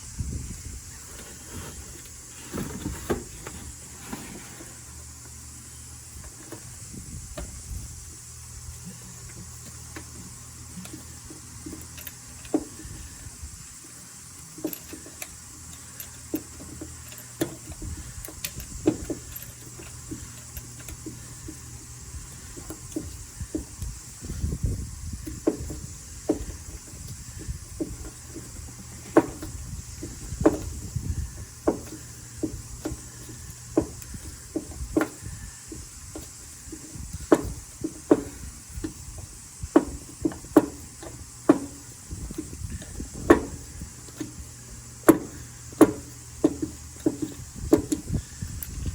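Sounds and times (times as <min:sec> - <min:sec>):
low rumbling handling noise: 0:00.0 - 0:48.9.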